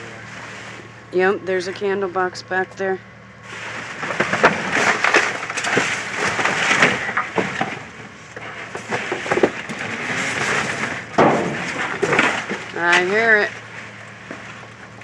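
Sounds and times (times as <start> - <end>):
rummaging through trash: 3.4 - 15.0.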